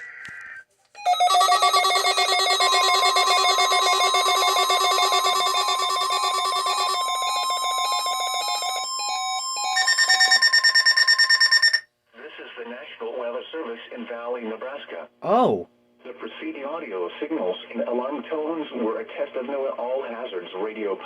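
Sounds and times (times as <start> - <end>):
steady alarm tone: 1.0 - 11.8
pulsing electronic warble: 1.1 - 9.7.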